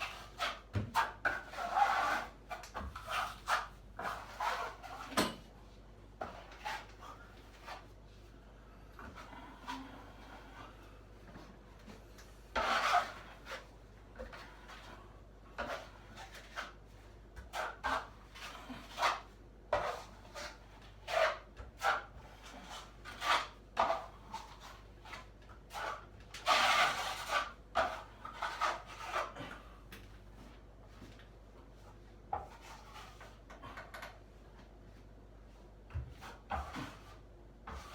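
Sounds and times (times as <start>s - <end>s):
hand tool scraping a ceiling: 0.0s - 5.4s, 6.2s - 7.9s, 12.5s - 29.7s, 32.3s - 34.2s, 36.0s - 37.9s.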